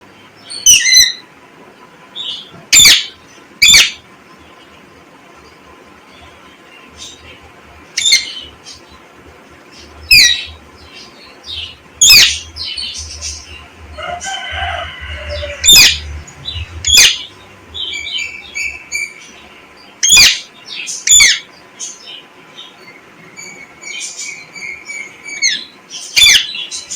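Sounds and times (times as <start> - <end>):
parrot chirps: 0.5 - 1.2, 2.7 - 4.0, 8.0 - 8.4, 9.8 - 19.2, 20.0 - 21.5
parrot shrieking: 0.6 - 1.2, 2.8 - 4.0, 12.0 - 12.5, 14.0 - 16.2, 16.8 - 18.3, 20.0 - 20.5.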